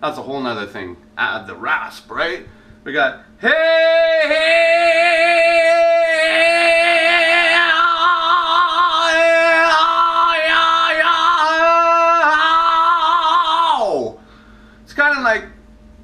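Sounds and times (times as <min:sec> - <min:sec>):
man singing long raspy note: 0:03.4 - 0:14.2.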